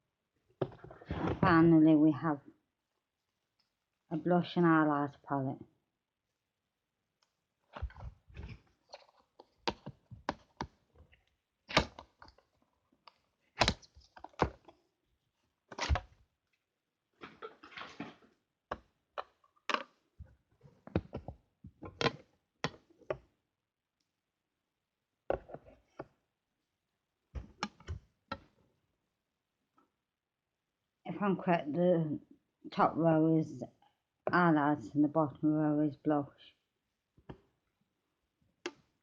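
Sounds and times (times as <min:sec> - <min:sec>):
plastic palette clicks and knocks: 0:09.0 - 0:10.8, 0:13.6 - 0:14.8.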